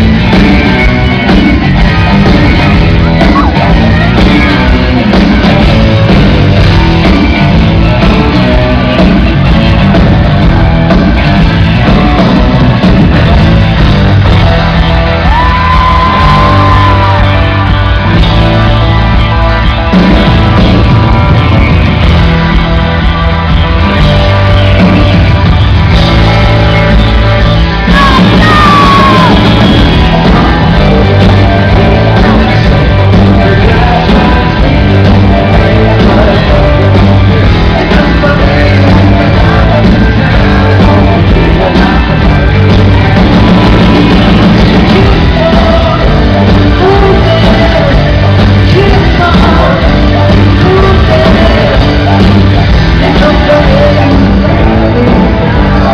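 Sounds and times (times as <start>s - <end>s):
live rock band playing: 0.0s - 55.9s
lead vocal singing: 27.8s - 55.9s.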